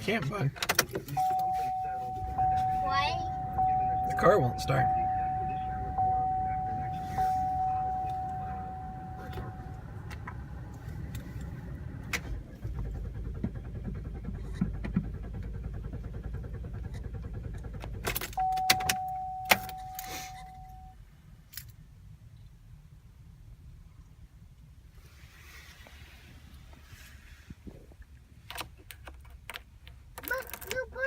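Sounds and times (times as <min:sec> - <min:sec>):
electronic chime: 0:01.2 - 0:10.0, 0:18.4 - 0:20.9
starter cranking engine: 0:09.0 - 0:18.7
key and ignition clicks: 0:16.9 - 0:20.9, 0:28.4 - 0:31.0.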